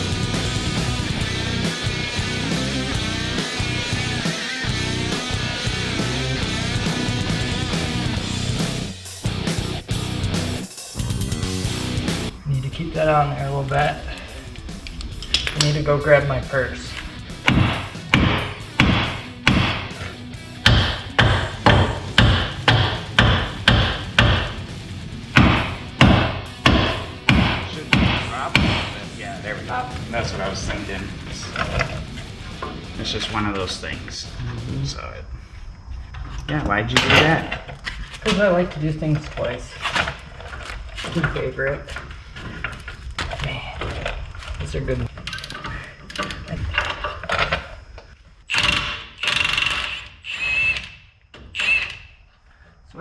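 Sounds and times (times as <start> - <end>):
hammer blows on metal: 25.4 - 29.2.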